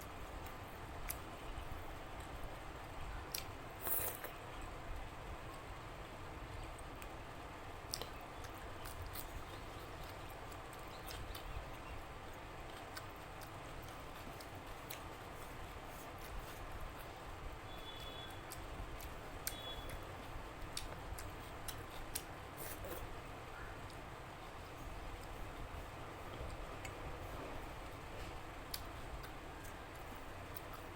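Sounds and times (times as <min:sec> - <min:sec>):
chewing and lip-smacking: 0:12.7 - 0:17.1.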